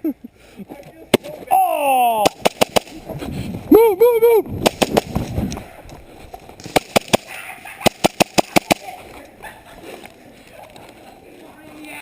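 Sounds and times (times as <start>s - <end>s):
airsoft pistol shots: 2.2s - 3.0s, 4.6s - 5.2s, 6.6s - 8.9s.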